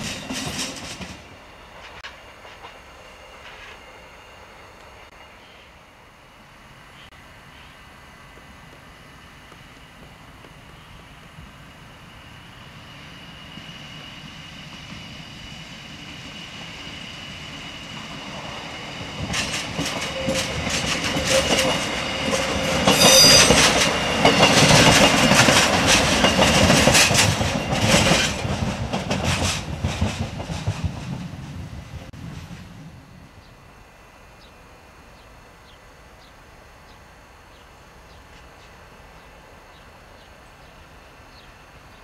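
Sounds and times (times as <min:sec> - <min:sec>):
train wheels clattering over rail joints: 0:00.0 - 0:02.8, 0:19.0 - 0:32.7
wheel squeal: 0:19.9 - 0:24.0.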